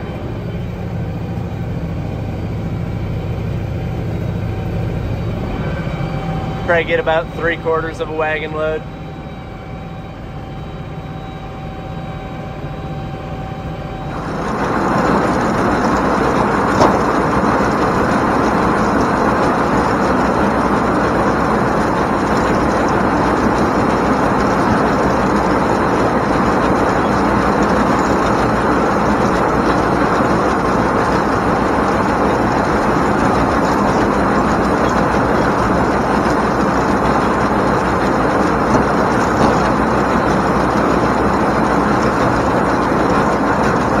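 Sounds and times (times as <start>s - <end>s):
corn picker working: 0.0s - 9.3s, 10.8s - 44.0s
tractor diesel engine running: 0.0s - 44.0s.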